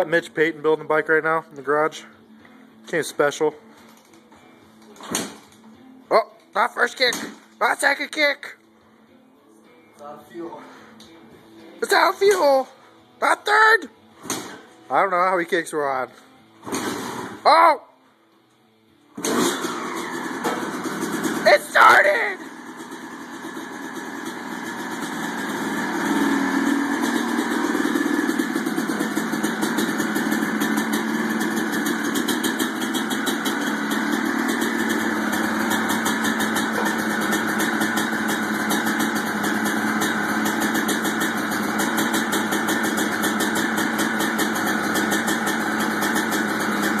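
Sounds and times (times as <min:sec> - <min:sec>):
two-stroke motorcycle engine running: 0:16.6 - 0:17.4, 0:19.2 - 0:47.0.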